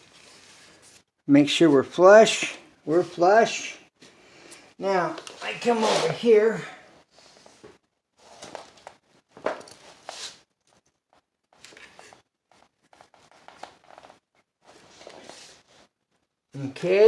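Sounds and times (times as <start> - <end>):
drywall sheet scraping: 5.4 - 6.5.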